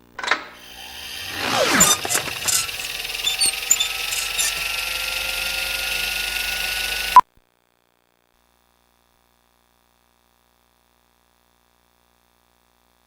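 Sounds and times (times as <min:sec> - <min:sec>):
whirring buzz with rising tone: 0:00.6 - 0:07.2.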